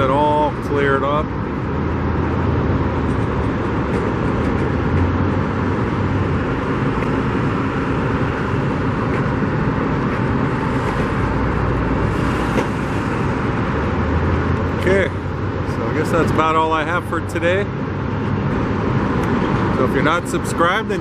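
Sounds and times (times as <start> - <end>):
road traffic rumble: 0.0 - 21.0.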